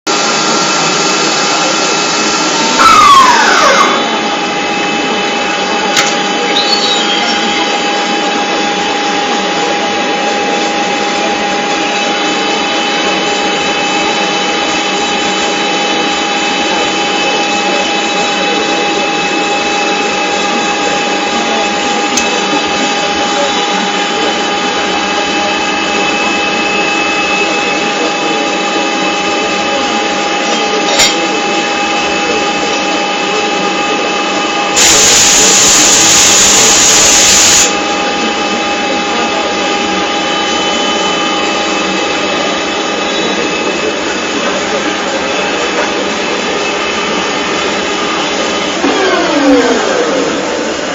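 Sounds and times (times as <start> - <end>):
factory machinery running: 0.1 - 50.9
loud falling tone: 0.4 - 5.0, 48.0 - 50.9.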